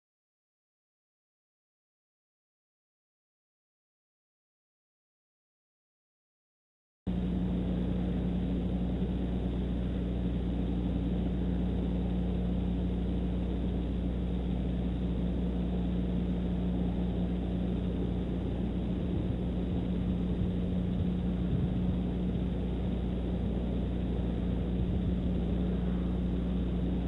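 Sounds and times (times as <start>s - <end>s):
constant hum: 7.1s - 27.0s
wind rumbling on microphone: 7.2s - 27.0s.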